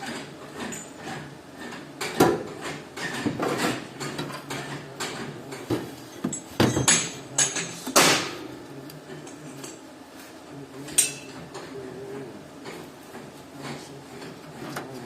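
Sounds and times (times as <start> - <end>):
metallic clanks and knocks: 0.1 - 8.4.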